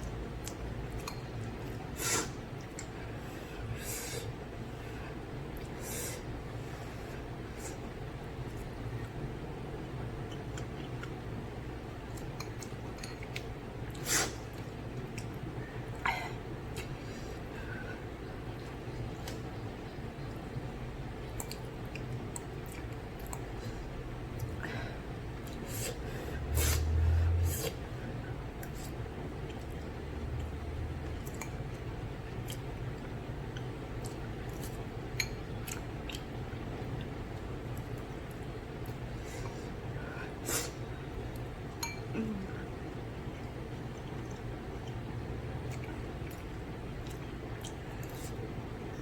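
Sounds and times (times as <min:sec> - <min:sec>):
soft chewing: 0:00.0 - 0:24.6, 0:26.6 - 0:49.0
steady low hum: 0:00.0 - 0:49.0
person chewing: 0:21.3 - 0:23.6, 0:28.5 - 0:39.6, 0:43.3 - 0:48.4
breathy sounds: 0:42.1 - 0:42.7.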